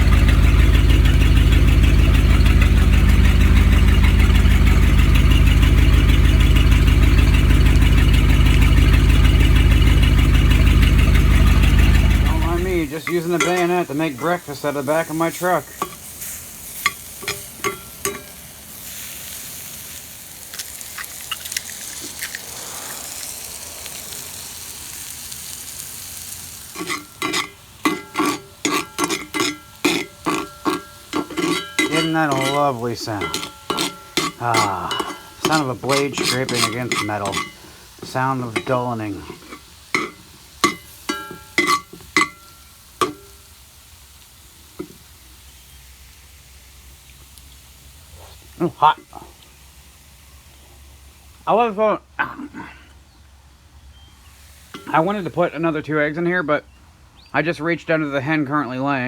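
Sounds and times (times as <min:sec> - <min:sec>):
blade scraping metal pan: 0:00.0 - 0:18.4, 0:26.7 - 0:43.4
food sizzling in metal pan: 0:00.0 - 0:51.5, 0:54.2 - 0:56.0.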